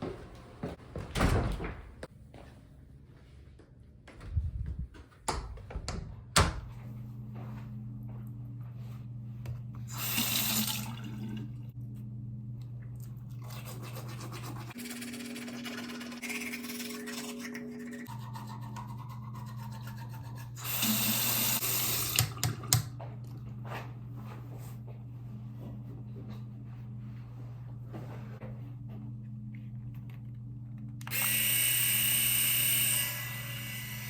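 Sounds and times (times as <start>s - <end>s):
tap water running into sink: 9.9s - 11.6s, 20.6s - 22.9s.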